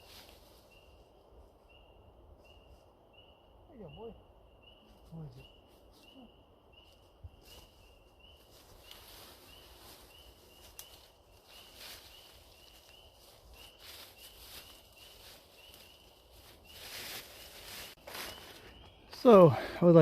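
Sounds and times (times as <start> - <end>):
rustling leaves and twigs: 0.0 - 3.2, 4.7 - 19.8.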